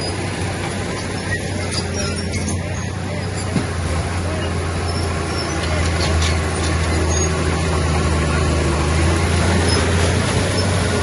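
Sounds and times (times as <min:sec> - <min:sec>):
diesel engine droning: 0:00.0 - 0:11.0.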